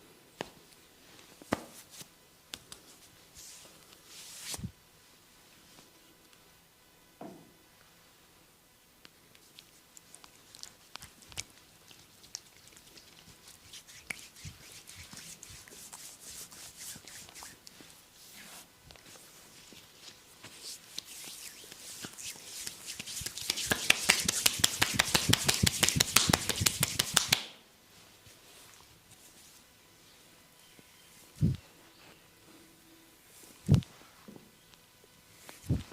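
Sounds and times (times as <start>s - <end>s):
hands rubbing skin: 9.4s - 27.5s
sharp taps and clicks: 23.2s - 27.5s.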